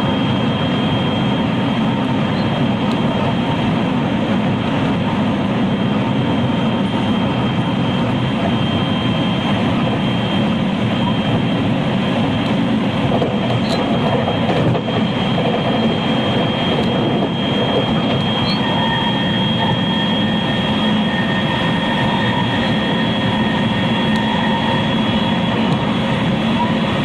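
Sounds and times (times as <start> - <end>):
high whine: 0.0 - 27.0
train wheels rumbling: 8.4 - 27.0.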